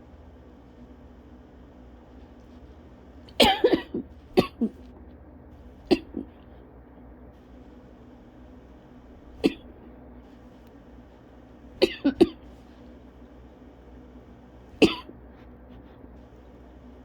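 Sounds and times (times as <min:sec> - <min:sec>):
person coughing: 0:03.3 - 0:04.9, 0:05.8 - 0:06.4, 0:09.4 - 0:09.7, 0:11.8 - 0:12.4, 0:14.8 - 0:15.2.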